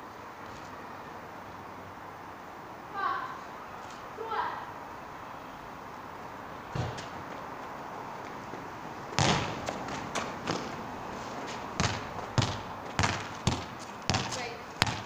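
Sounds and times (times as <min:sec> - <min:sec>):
hard football kick: 0:06.7 - 0:07.1, 0:09.2 - 0:09.9, 0:11.8 - 0:15.0
ball bouncing thuds: 0:06.7 - 0:07.4, 0:09.1 - 0:10.8, 0:11.8 - 0:15.0.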